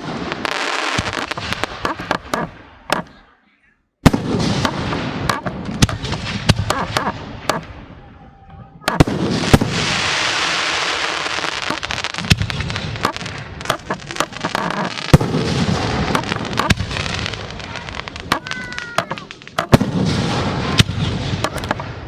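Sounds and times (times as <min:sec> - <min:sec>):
fireworks bursting: 0:00.0 - 0:03.3, 0:04.0 - 0:08.1, 0:08.7 - 0:22.0
continuous hiss: 0:08.9 - 0:22.0.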